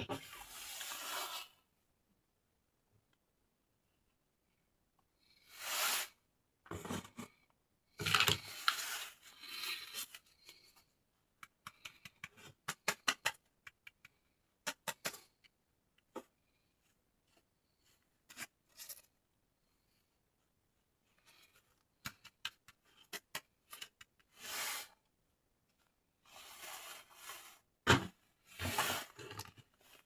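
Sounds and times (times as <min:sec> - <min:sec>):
toy pieces clicking and tapping: 0:11.4 - 0:15.3.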